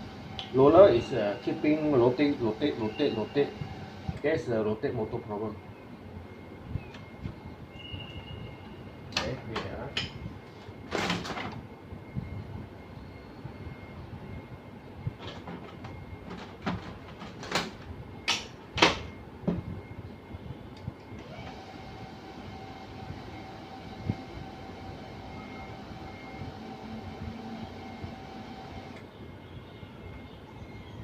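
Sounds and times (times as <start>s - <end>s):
printer motor whining: 0.0s - 4.8s, 21.0s - 29.1s.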